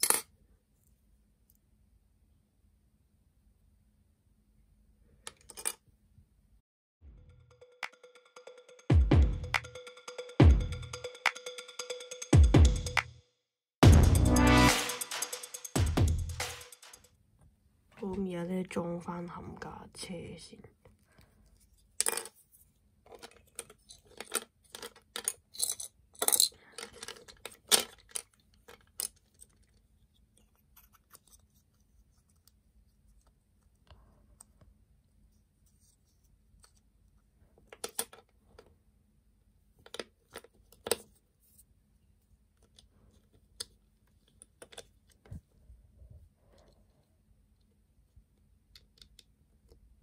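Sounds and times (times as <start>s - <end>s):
plastic parts clicking together: 23.1s - 29.8s, 42.6s - 45.4s, 48.7s - 49.8s.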